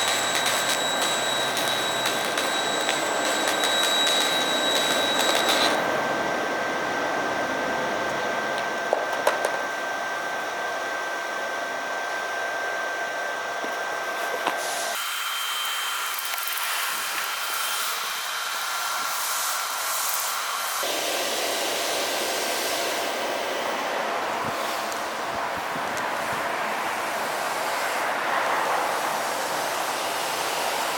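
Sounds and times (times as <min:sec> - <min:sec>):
welding arc crackles: 0:00.0 - 0:05.9
welding arc hissing: 0:00.0 - 0:05.9.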